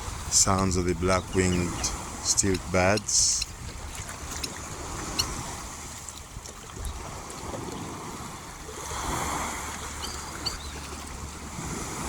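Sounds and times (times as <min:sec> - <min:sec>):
lake water lapping: 0:00.0 - 0:12.0
wind on microphone: 0:00.0 - 0:12.0
high bird calls: 0:00.4 - 0:03.5, 0:09.9 - 0:11.1.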